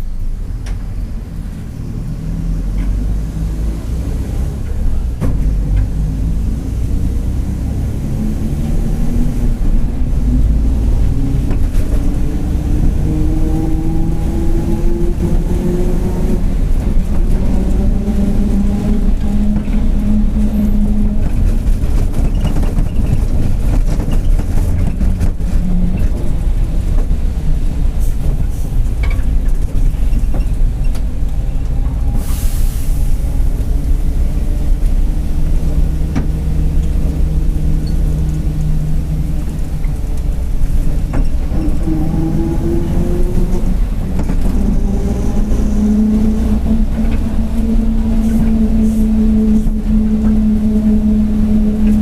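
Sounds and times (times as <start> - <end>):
bus diesel engine running: 0.0 - 52.0
air hiss burst: 32.2 - 33.2.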